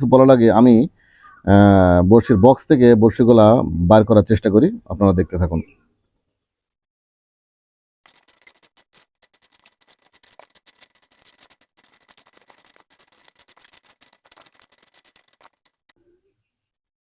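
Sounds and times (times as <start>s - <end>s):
fishing hooks rattling and clicking: 8.1s - 15.9s.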